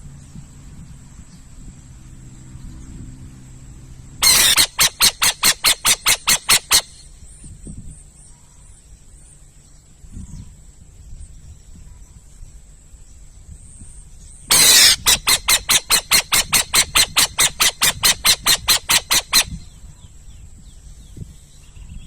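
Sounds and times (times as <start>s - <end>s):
owl screeching: 4.2s - 7.0s, 14.5s - 19.6s.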